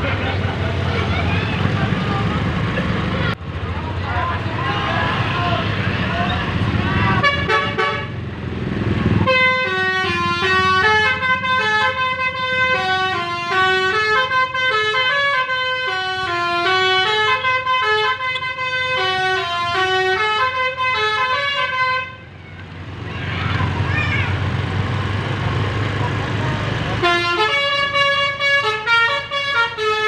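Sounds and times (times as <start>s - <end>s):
bus horn playing a melody: 7.1s - 8.2s, 9.2s - 22.2s, 27.0s - 30.0s.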